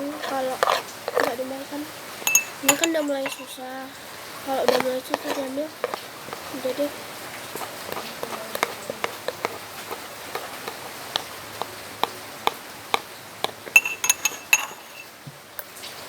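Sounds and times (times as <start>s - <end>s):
metal spoon clinking against glass: 2.3s - 3.6s, 13.7s - 15.1s.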